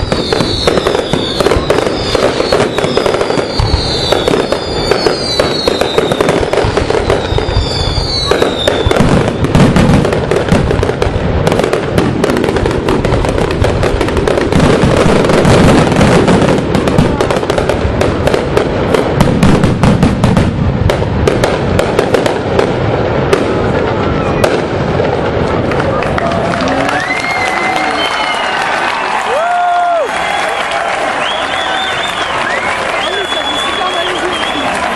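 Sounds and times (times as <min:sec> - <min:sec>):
whistling fireworks shells: 0:00.0 - 0:10.5, 0:26.9 - 0:29.5, 0:30.1 - 0:34.9
fireworks bangs and crackling: 0:00.0 - 0:34.9.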